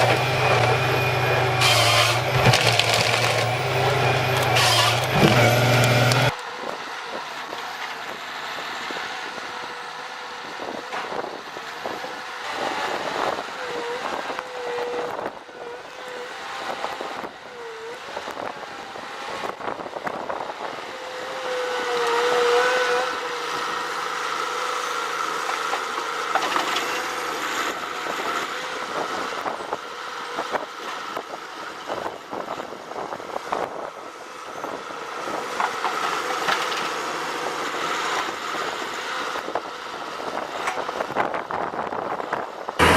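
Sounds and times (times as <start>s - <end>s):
heavy machine motor running: 0.0s - 6.4s.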